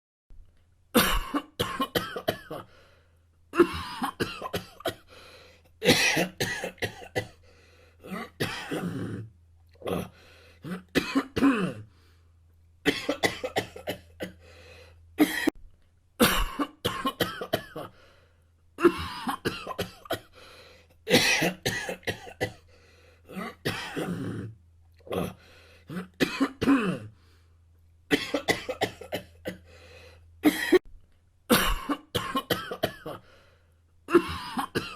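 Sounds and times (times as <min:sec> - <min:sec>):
person coughing: 0:01.0 - 0:02.7, 0:03.6 - 0:05.1, 0:05.8 - 0:07.4, 0:08.0 - 0:11.9, 0:12.9 - 0:14.4, 0:15.2 - 0:15.6, 0:16.2 - 0:17.9, 0:18.8 - 0:20.4, 0:21.1 - 0:22.6, 0:23.3 - 0:24.5, 0:25.1 - 0:27.1, 0:28.1 - 0:29.7, 0:30.4 - 0:30.9, 0:31.5 - 0:33.3, 0:34.1 - 0:34.9.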